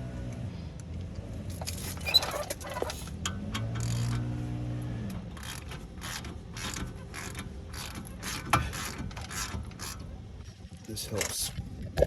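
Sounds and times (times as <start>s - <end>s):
ratchet wrench clicking: 3.8s - 4.2s, 5.4s - 10.0s.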